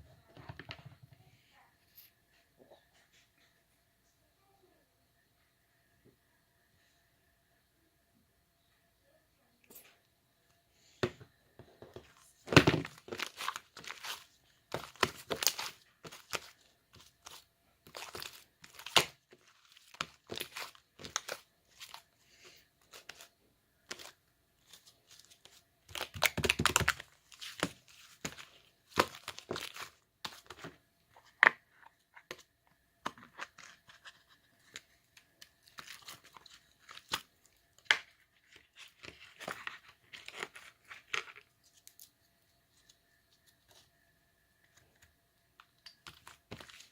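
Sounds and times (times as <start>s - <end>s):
hands crinkling packaging: 12.5s - 22.1s, 23.9s - 30.6s
scrapes and small knocks: 23.9s - 43.9s.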